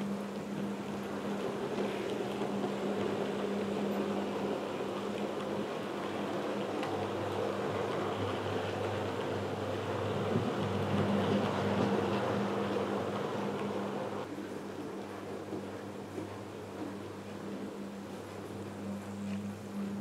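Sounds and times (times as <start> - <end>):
wheels rumbling on track: 0.0 - 14.3.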